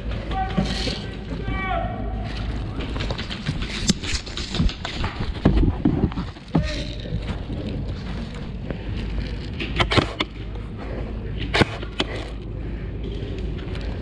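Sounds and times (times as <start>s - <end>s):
low rumble of movement: 0.0s - 14.0s
wind on microphone: 2.9s - 6.7s
airsoft gun shots: 9.8s - 10.3s, 11.5s - 12.3s.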